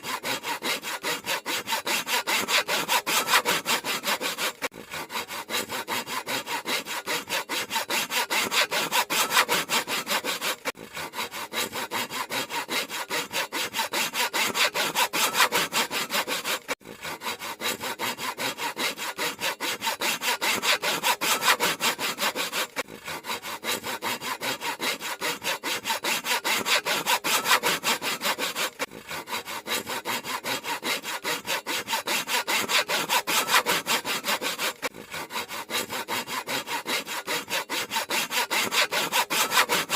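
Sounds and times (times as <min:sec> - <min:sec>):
handsaw cutting wood: 0:00.0 - 0:39.9.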